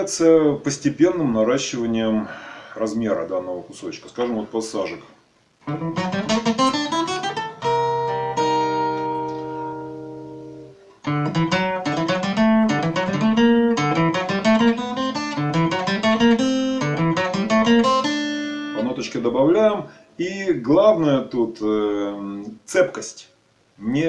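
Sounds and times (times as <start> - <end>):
acoustic guitar playing: 5.6 - 20.1.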